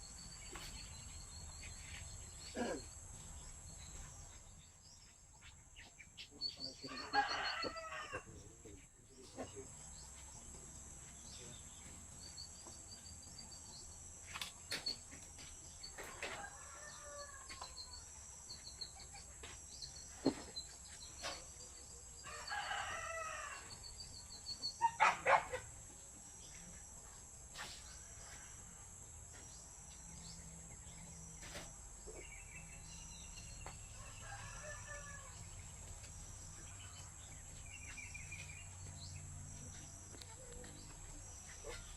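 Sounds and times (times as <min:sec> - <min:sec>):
rooster crowing: 0:06.9 - 0:08.3, 0:16.0 - 0:17.8, 0:22.2 - 0:23.8, 0:33.9 - 0:35.6.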